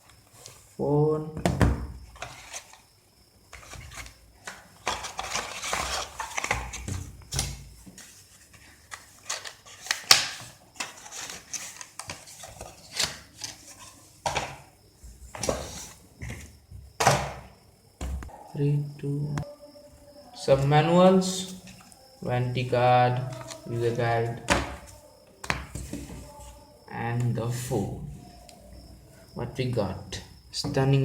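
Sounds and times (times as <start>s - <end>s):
packaging rustling: 3.5s - 14.6s, 23.2s - 23.9s.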